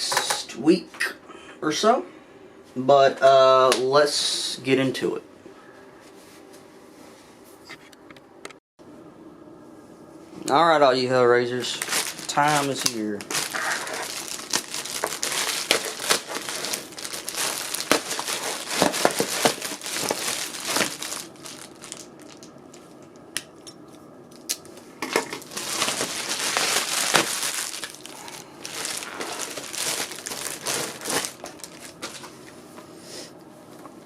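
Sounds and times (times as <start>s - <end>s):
packaging crinkling and crumpling: 11.6s - 23.2s, 24.4s - 32.4s.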